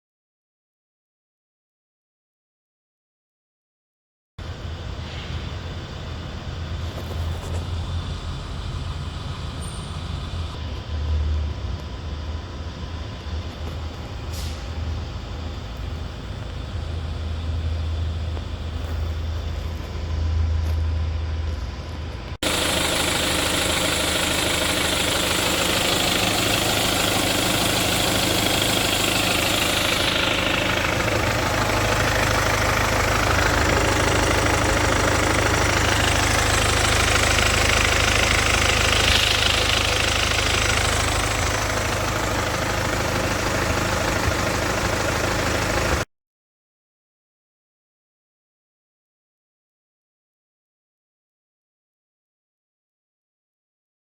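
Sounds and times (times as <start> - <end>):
diesel engine idling: 4.4 - 46.1.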